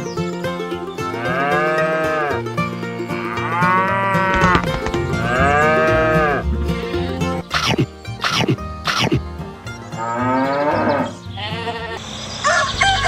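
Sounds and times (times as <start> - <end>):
background music: 0.0 - 12.0
cow mooing: 1.2 - 2.4, 3.1 - 7.4, 10.0 - 12.0.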